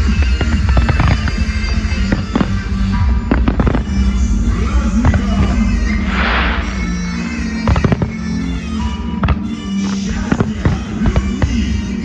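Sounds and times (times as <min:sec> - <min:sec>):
music with sustained notes: 0:00.0 - 0:12.0
sharp bang: 0:05.1 - 0:08.2.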